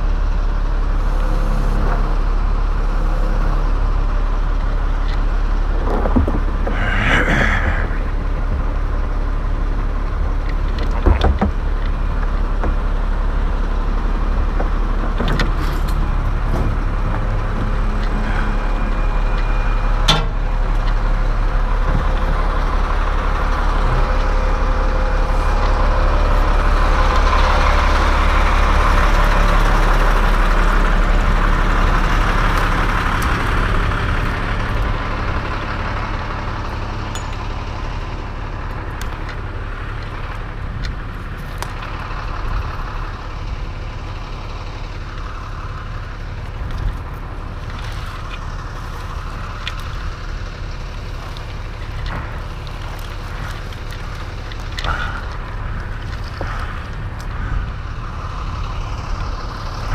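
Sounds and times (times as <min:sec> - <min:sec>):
low motor hum: 0:00.0 - 0:59.9
rushing noise: 0:06.6 - 0:08.9.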